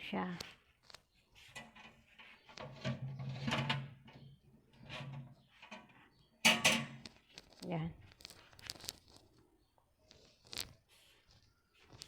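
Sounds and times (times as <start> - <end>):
cookware knocking and scraping: 1.6 - 7.1.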